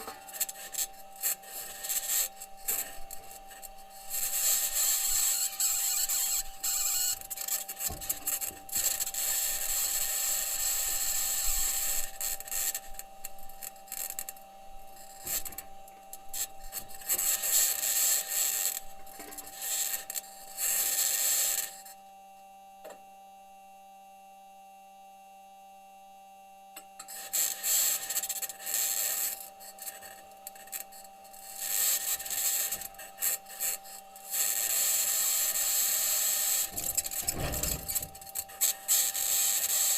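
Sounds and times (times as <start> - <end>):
wheels scraping over rock: 36.6 - 38.3.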